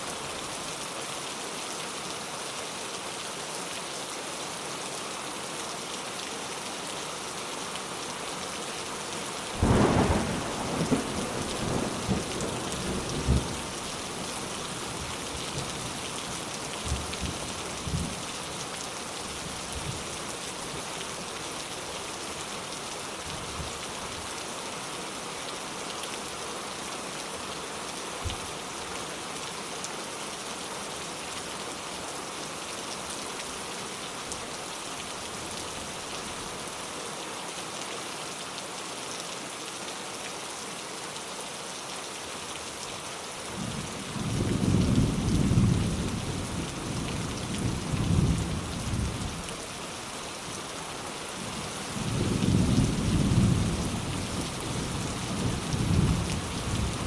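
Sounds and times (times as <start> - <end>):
rain hissing: 9.5 - 18.3
thunder rumbling: 9.6 - 13.5.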